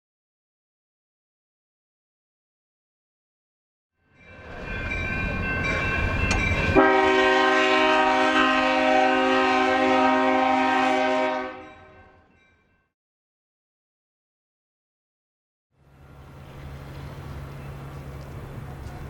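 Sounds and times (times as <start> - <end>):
diesel locomotive engine rumbling: 4.2 - 11.5, 15.8 - 19.0
train air horn chord: 6.7 - 12.2.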